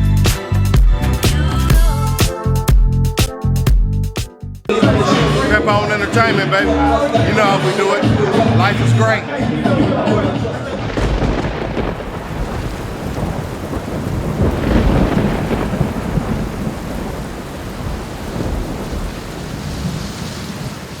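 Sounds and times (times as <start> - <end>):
rolling thunder: 10.7 - 21.0
steady rain: 10.7 - 21.0.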